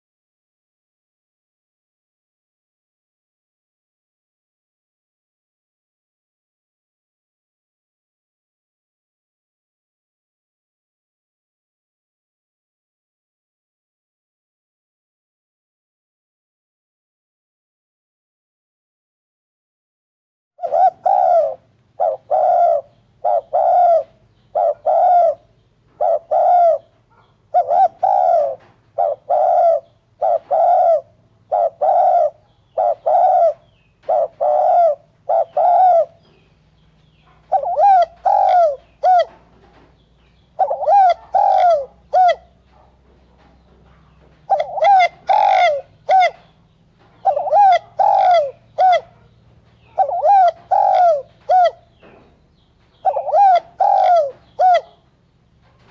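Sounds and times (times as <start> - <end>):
dove cooing: 20.6 - 55.9.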